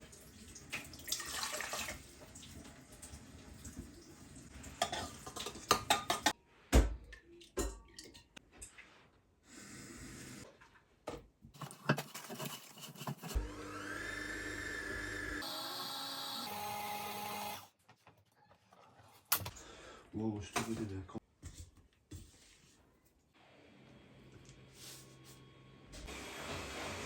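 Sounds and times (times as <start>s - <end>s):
liquid pouring: 0.1s - 2.8s
utensils clinking against a bowl: 4.8s - 6.4s.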